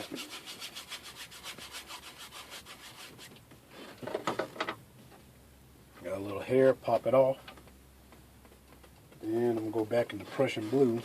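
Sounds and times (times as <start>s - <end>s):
brush scrubbing paint on canvas: 0.0s - 3.4s, 10.3s - 11.0s.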